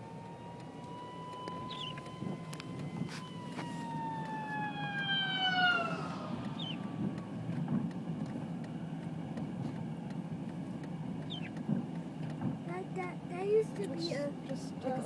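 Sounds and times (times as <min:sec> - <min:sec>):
emergency vehicle siren: 0:00.0 - 0:11.5
low vehicle rumble: 0:00.0 - 0:15.0.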